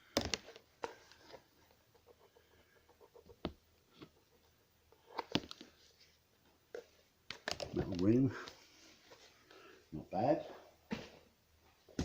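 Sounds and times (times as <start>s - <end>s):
small objects knocking and clicking: 0.0s - 1.0s, 7.3s - 8.2s.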